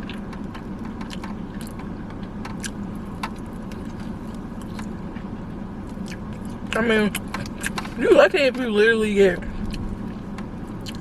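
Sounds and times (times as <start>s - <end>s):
car cabin hum: 0.0s - 11.0s
person chewing chicken wings: 9.6s - 9.9s, 10.8s - 11.0s.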